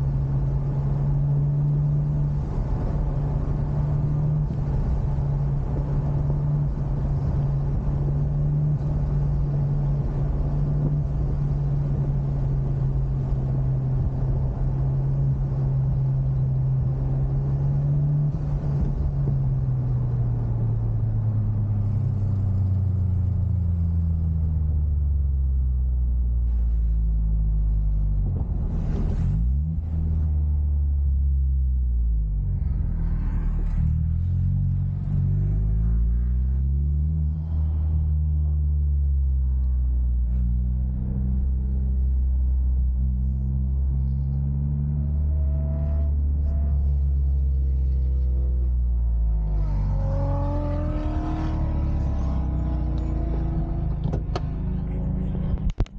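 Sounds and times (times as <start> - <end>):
road and wind noise: 0.0 - 55.9
car engine revving: 32.0 - 55.9.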